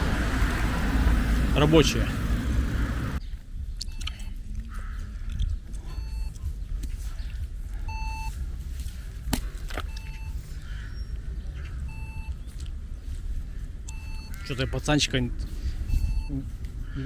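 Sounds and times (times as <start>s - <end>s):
steady low rumble: 0.0s - 17.0s
crossing signal beeping: 5.8s - 6.5s, 7.8s - 8.4s, 9.9s - 10.6s, 11.8s - 12.5s, 13.9s - 14.7s, 15.9s - 16.5s.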